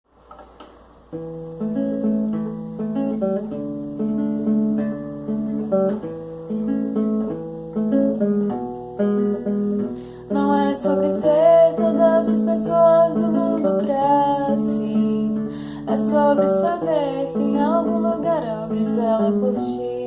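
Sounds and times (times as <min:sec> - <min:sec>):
acoustic guitar arpeggiated chords: 0:01.0 - 0:20.0.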